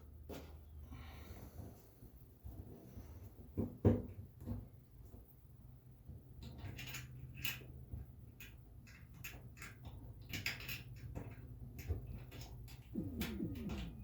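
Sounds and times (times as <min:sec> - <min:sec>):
steady low hum: 0:11.3 - 0:14.0.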